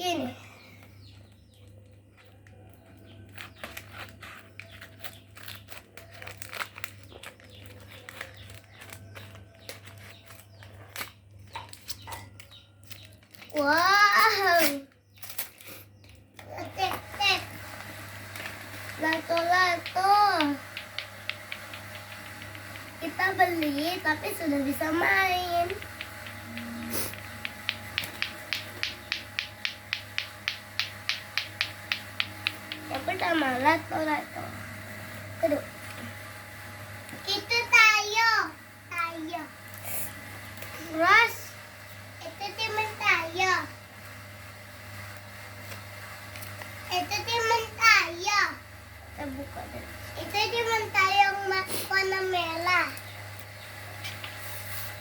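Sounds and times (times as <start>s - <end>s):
packaging crinkling: 3.2s - 11.2s, 11.8s - 13.8s
clacker toy balls clacking: 18.8s - 24.1s, 25.4s - 33.2s.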